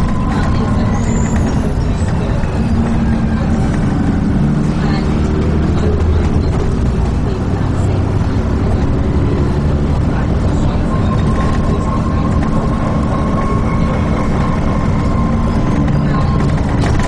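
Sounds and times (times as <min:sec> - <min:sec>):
bus engine and road noise: 0:00.0 - 0:17.0.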